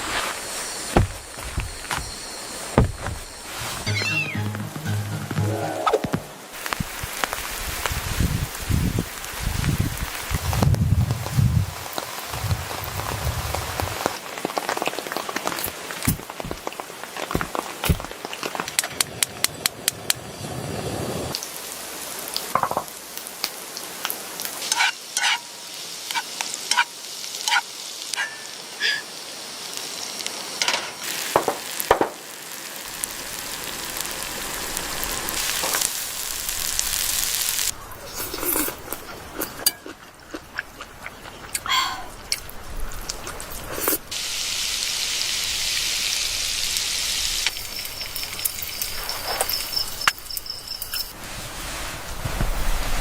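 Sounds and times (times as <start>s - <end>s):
food sizzling in a pan: 0.0s - 5.0s, 20.3s - 37.8s, 43.2s - 53.0s
cookware and utensils clinking: 28.2s - 29.0s, 47.4s - 51.2s.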